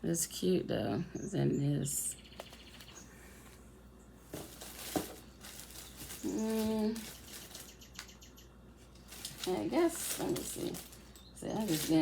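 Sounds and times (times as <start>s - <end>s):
plastic pack rustling: 4.3s - 8.1s, 8.8s - 12.0s.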